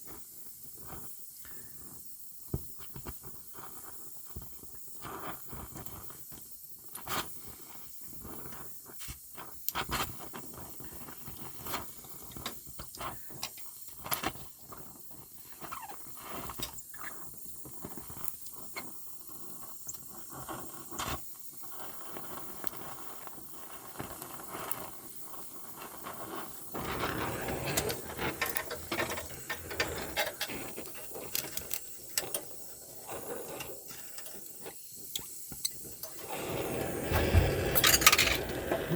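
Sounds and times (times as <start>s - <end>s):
welding crackles: 17.6s - 38.9s.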